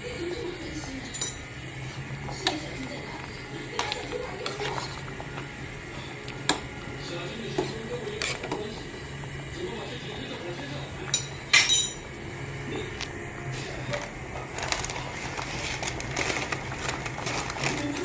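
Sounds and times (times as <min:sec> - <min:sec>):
utensil clinking against pot: 0:01.1 - 0:01.5, 0:11.1 - 0:12.0.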